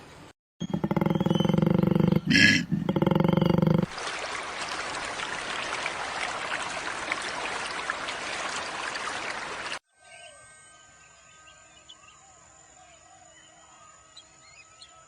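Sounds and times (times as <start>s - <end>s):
animal call: 0.6s - 3.9s.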